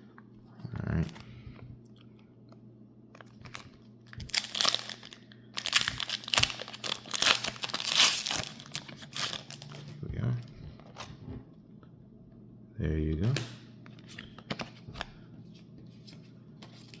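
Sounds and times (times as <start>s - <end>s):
foil wrapper crinkling and tearing: 3.3s - 9.9s.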